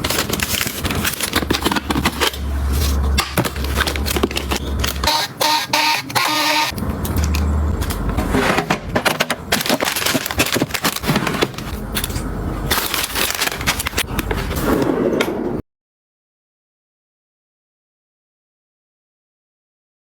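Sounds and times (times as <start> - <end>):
objects crinkling: 0.0 - 14.8.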